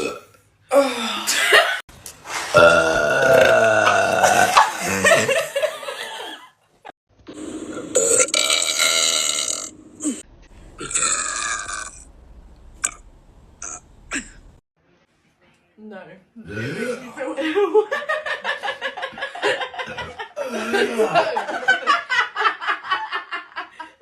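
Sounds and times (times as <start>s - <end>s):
person burping loudly: 0.0s - 0.4s, 2.5s - 5.4s, 7.3s - 12.1s, 13.6s - 14.4s, 16.4s - 17.1s.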